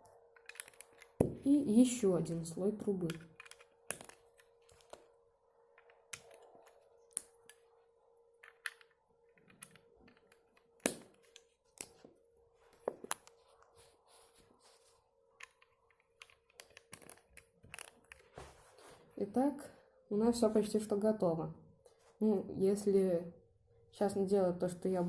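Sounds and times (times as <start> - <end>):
faint steady hum: 0.0 - 25.0
plastic bricks clicking: 0.4 - 1.4, 2.9 - 5.0, 15.4 - 18.3.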